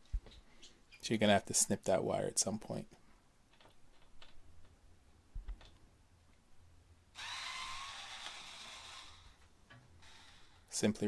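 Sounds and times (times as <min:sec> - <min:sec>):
electric screwdriver whirring: 0:07.2 - 0:09.4, 0:10.0 - 0:10.7.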